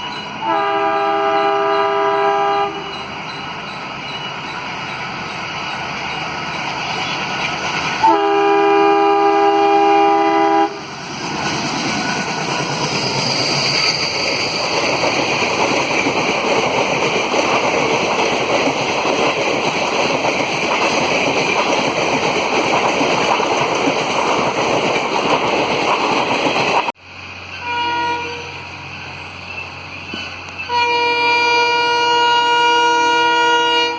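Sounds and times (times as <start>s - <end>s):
train rushing past with wheel noise: 0.0s - 33.9s
locomotive horn chord blasts: 0.4s - 3.0s, 8.0s - 10.8s, 27.6s - 28.6s, 30.7s - 33.9s.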